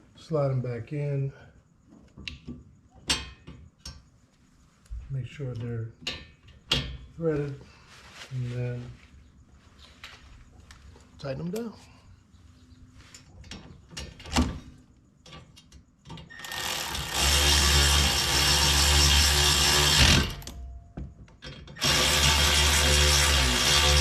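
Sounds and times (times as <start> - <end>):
power tool whirring: 16.3 - 20.6, 21.8 - 24.0.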